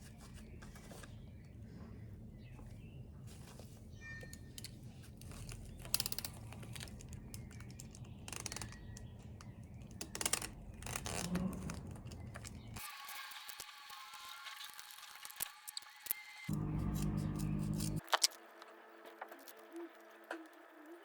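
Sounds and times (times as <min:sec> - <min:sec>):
small objects clicking and rustling: 0:04.3 - 0:21.0
music: 0:12.8 - 0:18.0
low room hum: 0:16.5 - 0:18.3.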